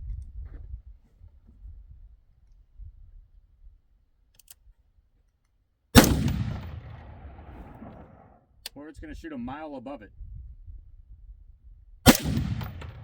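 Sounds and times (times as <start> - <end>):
rifle shot with echo: 6.0 - 8.4, 12.1 - 13.0
faint low rumble: 6.0 - 9.4.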